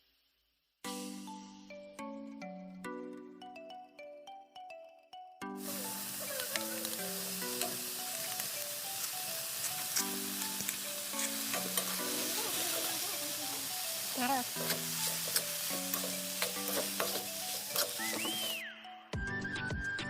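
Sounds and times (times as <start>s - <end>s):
soft background music: 0.8s - 20.0s
food sizzling in hot oil: 5.6s - 18.6s
utensil stirring clicks: 14.5s - 18.6s.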